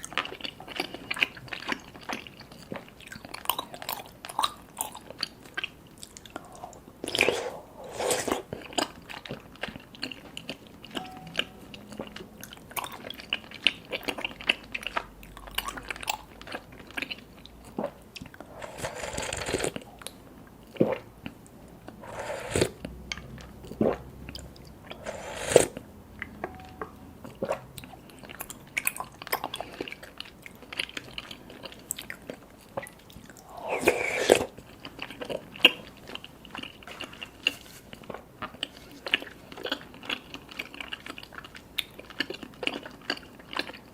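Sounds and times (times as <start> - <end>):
chewing with wet mouth clicks: 0.0 - 7.3, 8.5 - 18.5, 26.2 - 33.6, 38.0 - 43.9
slurping through a straw: 6.4 - 8.6, 18.4 - 19.9, 22.0 - 22.8, 24.9 - 25.8, 33.4 - 34.6.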